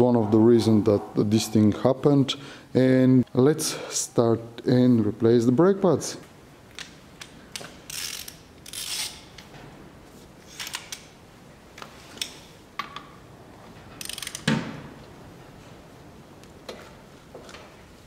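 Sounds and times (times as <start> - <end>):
ratchet wrench clicking: 7.9 - 9.2, 14.0 - 14.5.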